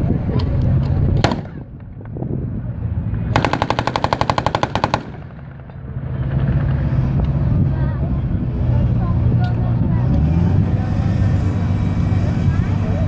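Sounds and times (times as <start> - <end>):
low rumble: 0.0 - 13.0
sharp crack: 1.2 - 2.3, 3.3 - 6.0
machine gun automatic burst: 3.4 - 5.4.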